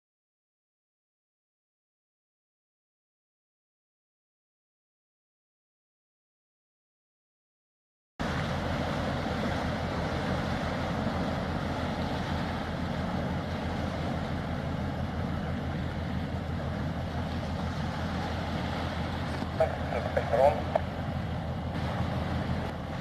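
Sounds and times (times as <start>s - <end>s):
ship engines rumbling: 8.2s - 23.0s.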